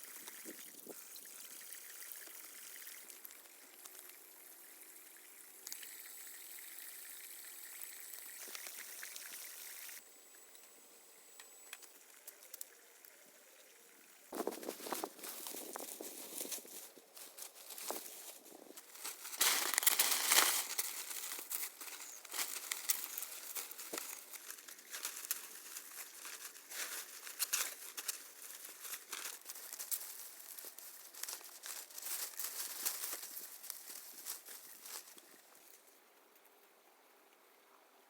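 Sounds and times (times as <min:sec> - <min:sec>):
dry material rustling and crackling: 0:14.3 - 0:36.0.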